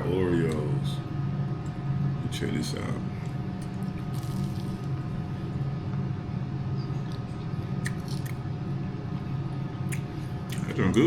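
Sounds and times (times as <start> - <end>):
steady low hum: 0.0 - 11.0
person chewing: 3.6 - 4.9, 7.0 - 8.4, 9.9 - 10.7.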